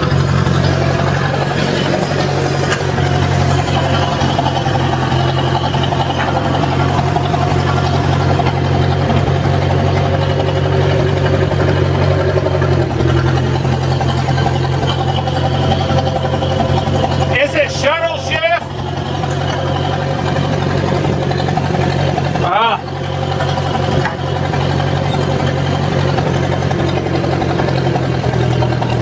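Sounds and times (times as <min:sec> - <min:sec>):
backhoe engine running steadily: 0:00.0 - 0:29.0.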